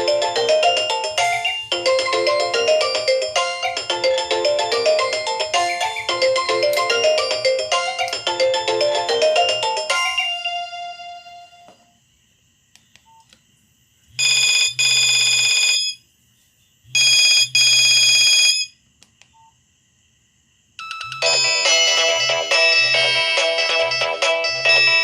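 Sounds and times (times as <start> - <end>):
ringtone melody: 0.0 - 11.6, 20.8 - 25.0.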